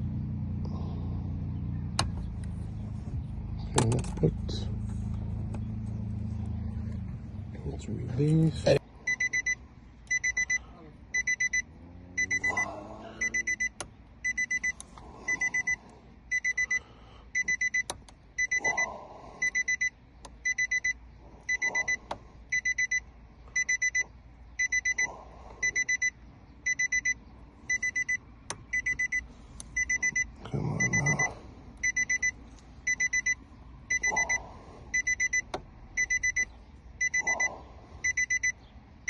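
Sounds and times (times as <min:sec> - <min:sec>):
electronic alarm beeping: 0:09.1 - 0:38.6.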